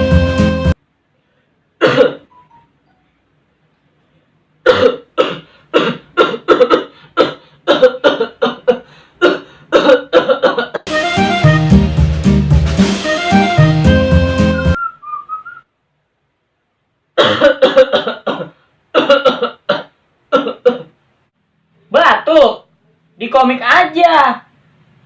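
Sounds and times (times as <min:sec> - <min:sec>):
person coughing: 0:01.8 - 0:02.3, 0:04.6 - 0:10.9, 0:17.2 - 0:21.0.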